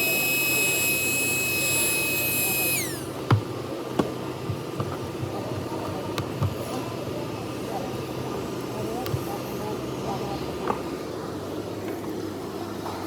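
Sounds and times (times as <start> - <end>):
electric blower whine: 0.0 - 3.3.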